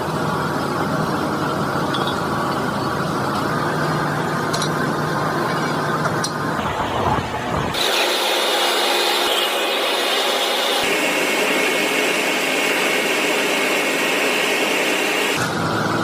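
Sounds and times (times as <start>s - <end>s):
machine hiss with high whine: 6.6s - 16.0s.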